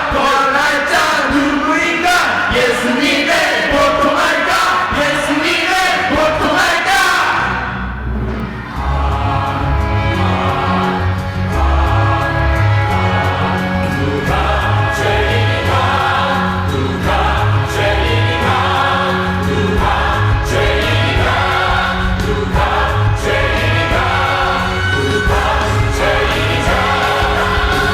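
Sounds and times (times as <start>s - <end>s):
choir singing worship music: 0.0s - 27.9s
held bass line: 7.4s - 27.9s
percussion beat: 8.2s - 27.9s.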